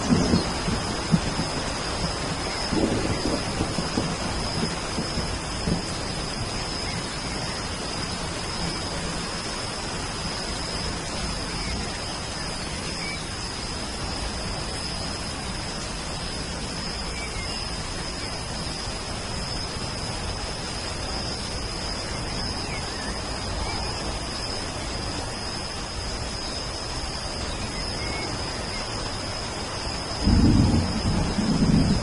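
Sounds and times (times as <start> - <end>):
low rumble of thunder: 0.0 - 22.5, 30.0 - 32.0
steady rain falling: 0.0 - 32.0
faint bird chirps: 11.5 - 13.4, 21.9 - 25.4, 27.4 - 29.0.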